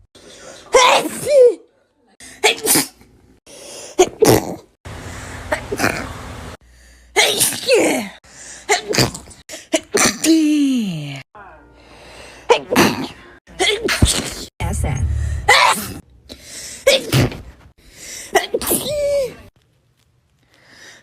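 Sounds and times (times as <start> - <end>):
people sneezing: 2.2 - 4.7, 7.2 - 10.8, 12.5 - 14.5, 16.7 - 17.4, 18.3 - 19.5.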